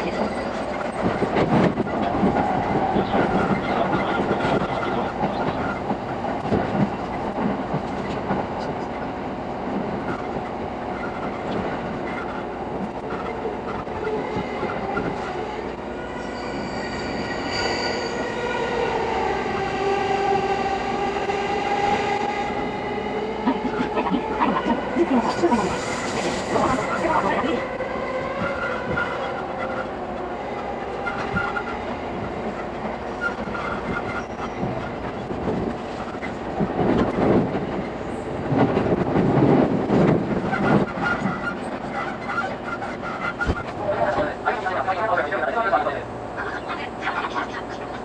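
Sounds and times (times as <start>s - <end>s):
train wheels clattering on rails: 0.0s - 15.4s, 30.9s - 44.3s.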